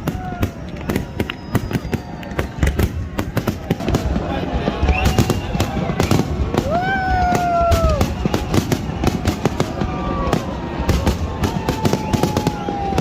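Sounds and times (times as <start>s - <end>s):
firework bangs and crackles: 0.0s - 13.0s
firework whistling: 0.0s - 13.0s.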